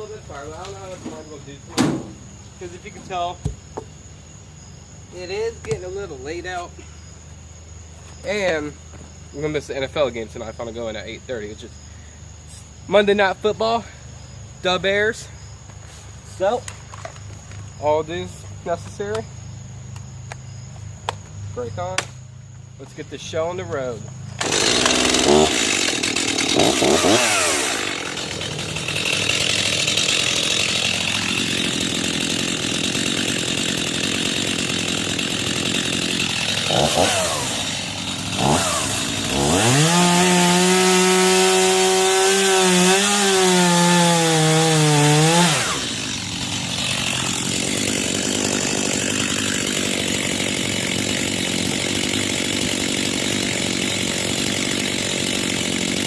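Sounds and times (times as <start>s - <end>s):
chainsaw cutting wood: 24.0s - 56.0s.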